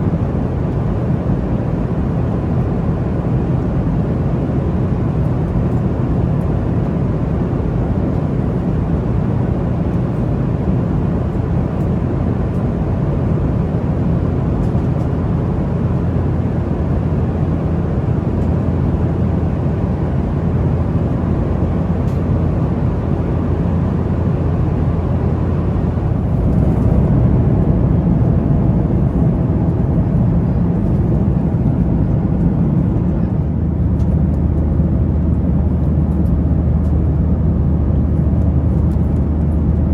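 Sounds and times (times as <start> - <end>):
jet engines in cabin: 0.0 - 39.9
low cabin hum: 0.0 - 39.9.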